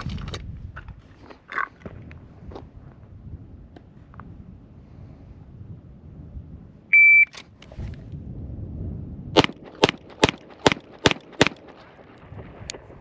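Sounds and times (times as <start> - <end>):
shot timer beep: 6.9 - 7.3
pistol shots: 9.4 - 11.8.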